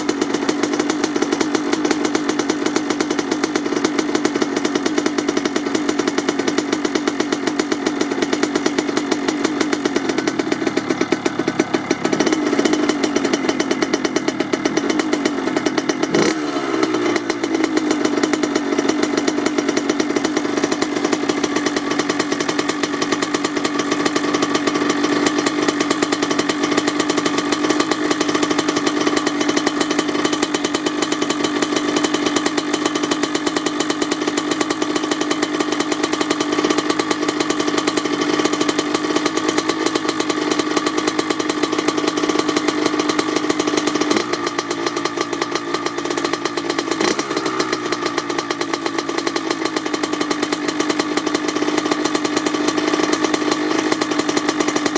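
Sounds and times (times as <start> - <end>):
two-stroke engine idling: 0.0 - 54.9.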